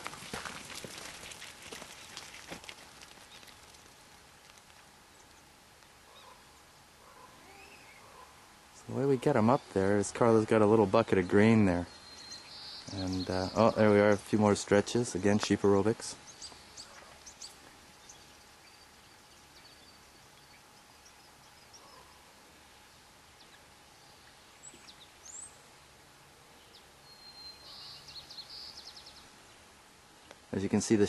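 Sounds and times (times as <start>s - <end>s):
faint bird chirps: 5.1s - 9.9s, 11.2s - 14.3s, 16.2s - 25.8s, 26.5s - 29.6s.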